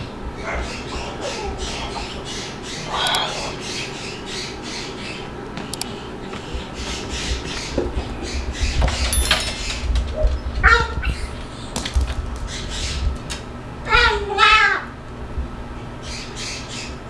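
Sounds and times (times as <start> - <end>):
cockatoo calling: 0.0 - 13.2.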